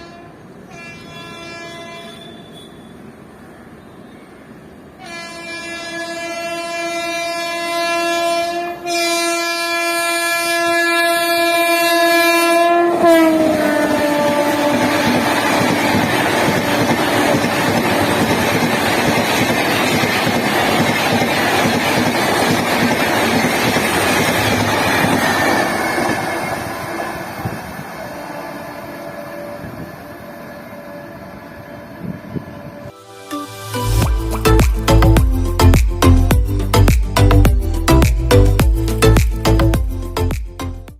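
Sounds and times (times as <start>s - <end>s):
train horn: 0.0s - 3.1s, 5.0s - 18.3s, 25.2s - 33.0s
rushing noise of passing train: 0.0s - 36.3s
train wheels clattering on track: 13.4s - 28.0s.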